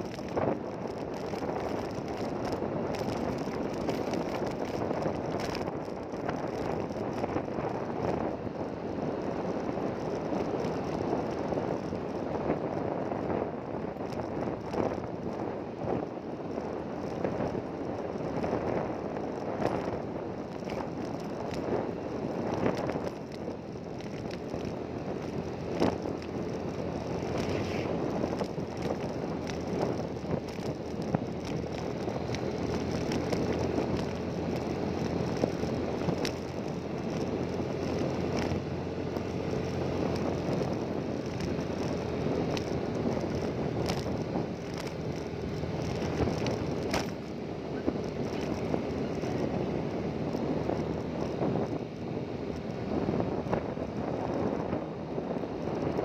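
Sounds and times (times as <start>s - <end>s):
wind buffeting microphone: 0.0s - 56.0s
engine running: 17.0s - 51.9s.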